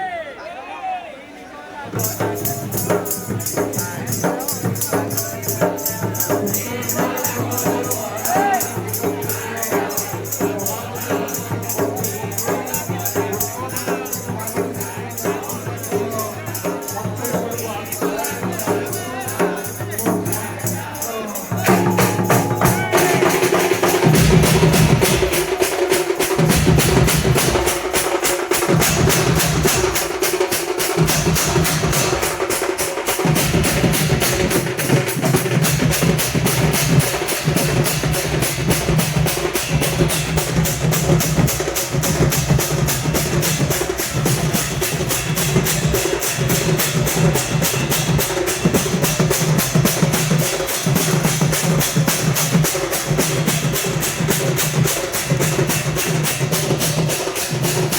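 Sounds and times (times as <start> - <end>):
drums beaten in fast rhythm: 1.9 - 57.9
gongs ringing: 2.0 - 57.9
deep drum: 21.6 - 57.9.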